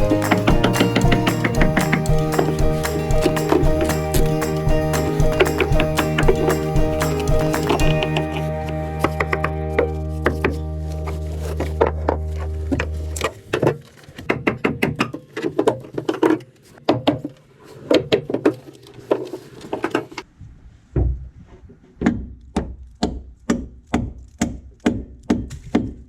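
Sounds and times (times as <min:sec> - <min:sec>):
held music chord: 0:00.0 - 0:13.5.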